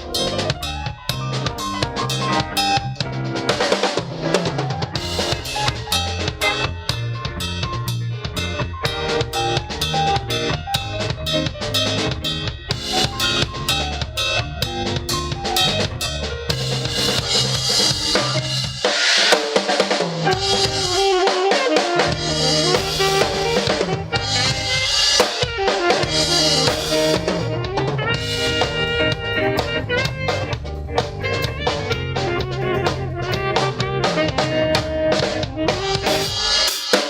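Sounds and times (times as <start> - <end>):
music with drum kit and bass: 0.0 - 37.0.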